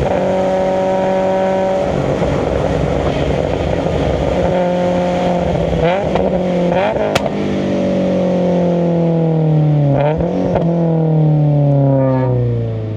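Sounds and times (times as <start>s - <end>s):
sharp click: 7.2s - 7.5s.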